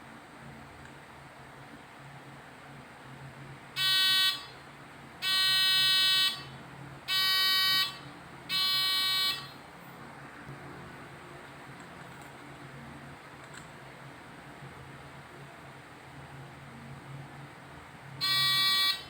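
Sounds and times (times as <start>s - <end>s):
alarm buzzer buzzing: 3.8s - 4.6s, 5.2s - 6.5s, 7.1s - 9.5s, 18.2s - 19.0s.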